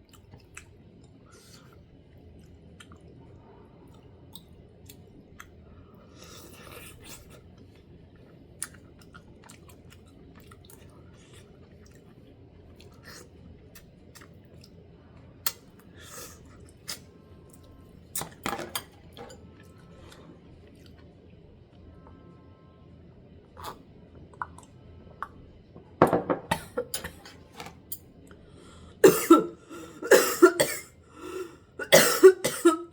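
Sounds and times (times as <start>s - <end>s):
person chewing food: 6.2s - 14.8s.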